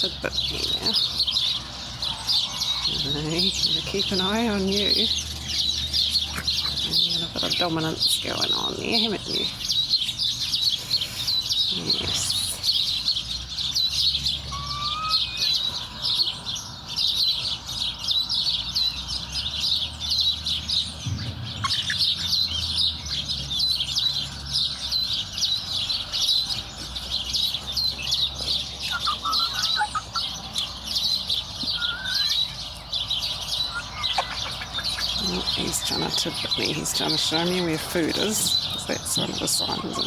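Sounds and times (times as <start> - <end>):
young chickens peeping: 0.0 - 40.0
lower rising chick calls: 14.0 - 16.4, 28.8 - 35.6.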